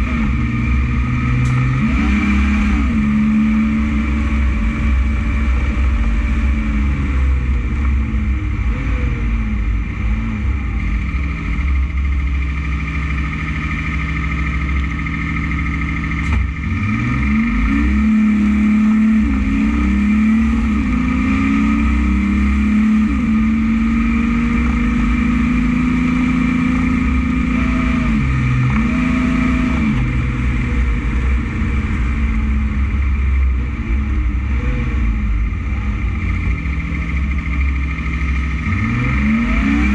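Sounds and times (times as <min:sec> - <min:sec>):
road rumble: 0:00.0 - 0:39.9
truck engine running: 0:00.0 - 0:39.9
sharp click: 0:01.4 - 0:01.7.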